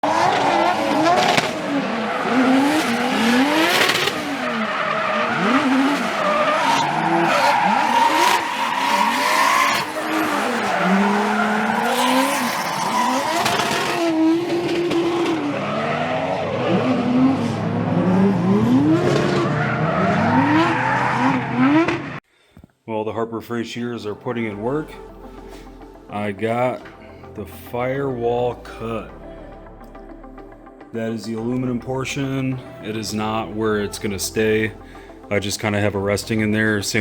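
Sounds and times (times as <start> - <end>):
car engine revving hard: 0.0 - 22.2
tyres squealing and skidding: 0.0 - 22.2.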